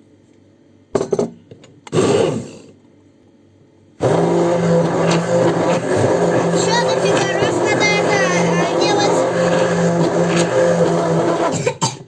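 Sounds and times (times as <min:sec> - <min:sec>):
electric blender motor: 0:04.0 - 0:11.6.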